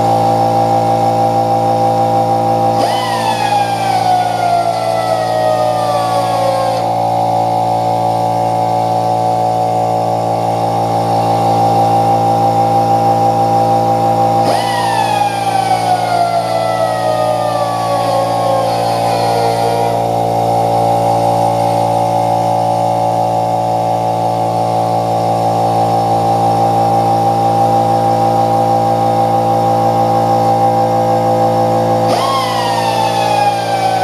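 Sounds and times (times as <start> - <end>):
small power tool motor whining: 2.4 - 8.6, 14.3 - 22.0, 32.0 - 34.0.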